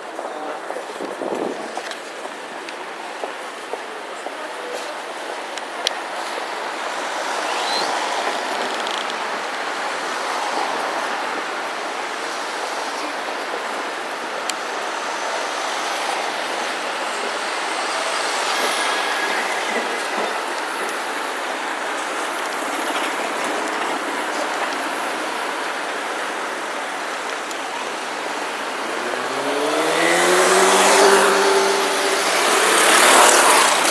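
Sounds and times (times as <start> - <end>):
vehicle in motion: 4.7 - 33.9
faint high squeals: 7.4 - 8.1.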